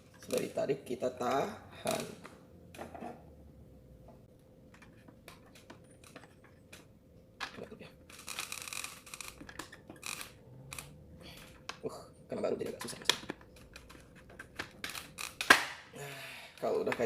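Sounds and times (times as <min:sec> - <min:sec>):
plastic clicks and scraping: 0:04.7 - 0:11.8, 0:12.6 - 0:15.6
plastic rubbing: 0:04.7 - 0:11.9, 0:12.6 - 0:15.8.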